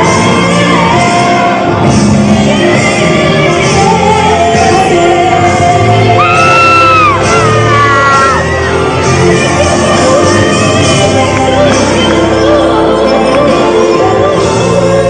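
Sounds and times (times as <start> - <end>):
live pop band: 0.0 - 15.0
woman singing: 0.0 - 15.0
high scream: 6.2 - 9.0.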